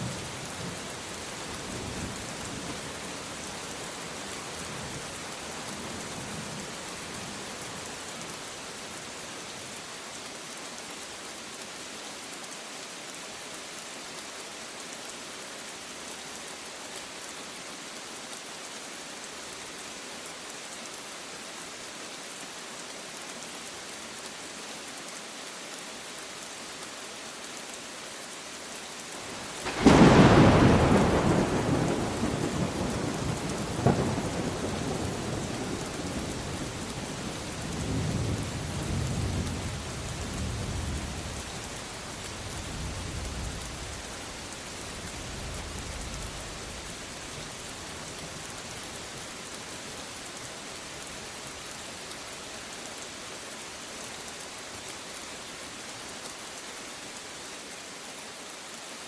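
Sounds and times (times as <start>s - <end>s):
rain falling: 0.0s - 59.0s.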